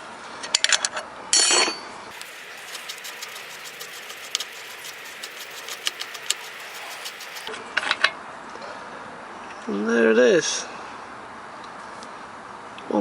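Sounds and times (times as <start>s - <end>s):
spanner turning pedal spindle: 2.1s - 7.5s
steady hiss: 2.1s - 7.5s.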